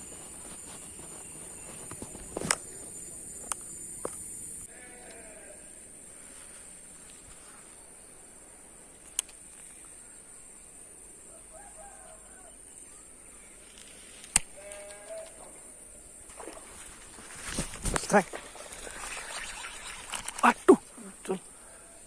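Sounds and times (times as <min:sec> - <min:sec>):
farm animal bleating: 0:04.7 - 0:05.6, 0:14.5 - 0:15.3.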